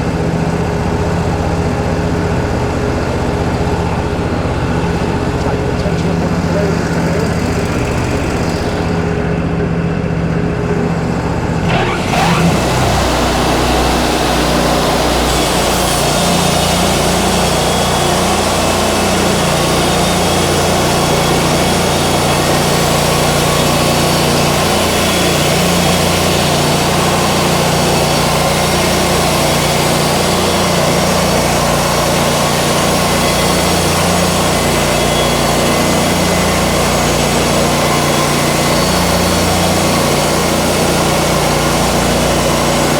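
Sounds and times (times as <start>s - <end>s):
sawmill engine running: 0.0s - 42.9s
band blade sawing wood: 10.8s - 42.9s.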